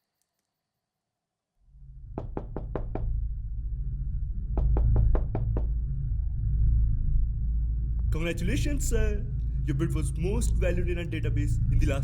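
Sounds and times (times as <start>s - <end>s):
low rumbling drone: 1.7s - 12.0s
knocking: 2.2s - 3.1s, 4.6s - 5.7s.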